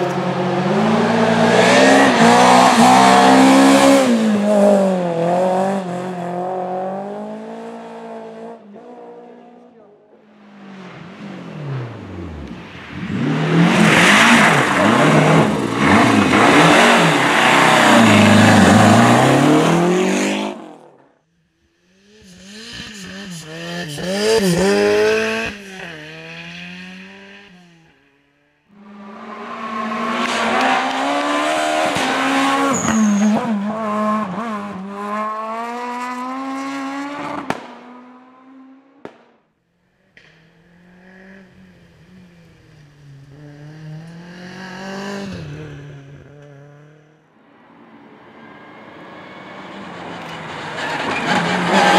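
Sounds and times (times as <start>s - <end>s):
rally car engines revving: 0.0s - 21.1s, 21.8s - 28.0s, 28.7s - 39.3s, 40.1s - 51.9s
sharp crack: 39.0s - 39.4s.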